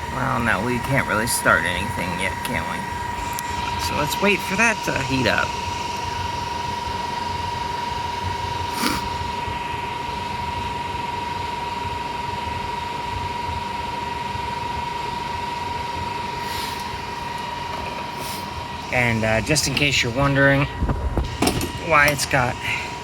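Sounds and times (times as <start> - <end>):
cooling fans whirring: 0.0 - 23.0.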